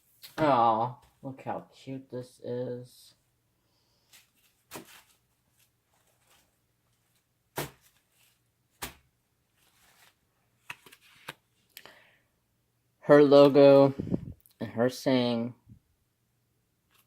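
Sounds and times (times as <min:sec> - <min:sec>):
wrapping rustling and crinkling: 0:04.0 - 0:11.7.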